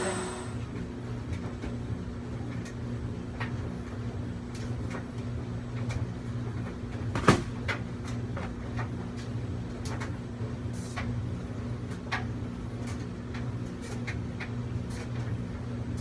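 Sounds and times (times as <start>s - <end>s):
water vacuum running: 0.0s - 0.8s
drying fans humming: 0.0s - 16.0s.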